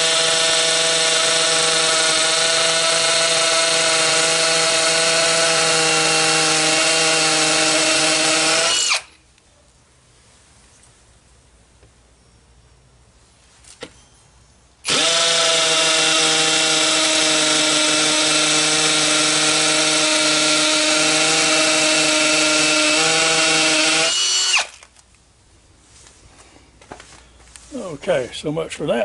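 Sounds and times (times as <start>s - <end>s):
hammer drill boring: 0.0s - 9.2s, 14.8s - 24.9s.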